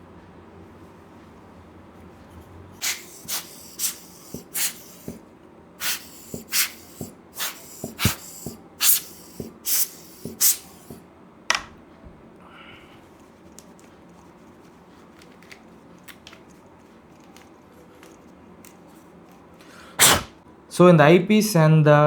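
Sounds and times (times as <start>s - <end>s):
short hissing bursts: 2.8s - 5.2s, 5.8s - 11.0s, 20.0s - 20.4s.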